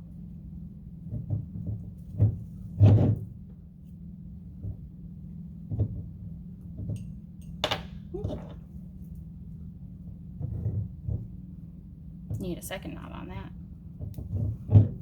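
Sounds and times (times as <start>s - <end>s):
steady low hum: 0.0s - 15.0s
knocks and bumps on tabletop: 14.0s - 15.0s.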